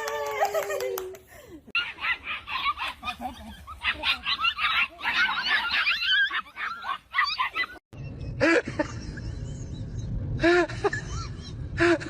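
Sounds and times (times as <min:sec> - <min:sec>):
dog yelping barks: 0:01.8 - 0:07.8
steady low rumble: 0:08.0 - 0:12.0.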